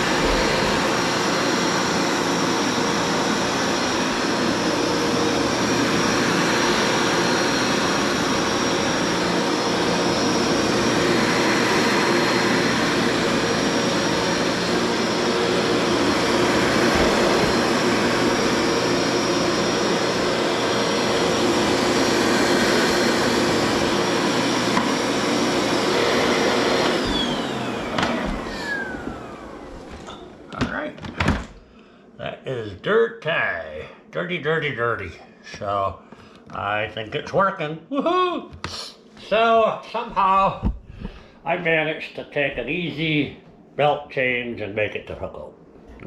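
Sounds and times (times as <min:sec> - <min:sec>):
carpet cleaner motor whine: 0:00.0 - 0:31.6.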